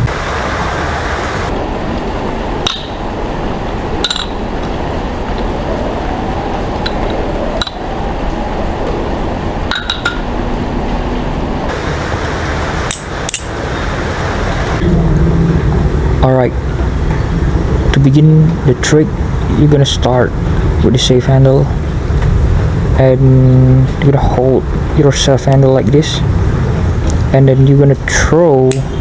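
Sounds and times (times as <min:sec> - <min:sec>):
background hiss: 0:00.0 - 0:05.7, 0:11.7 - 0:29.0.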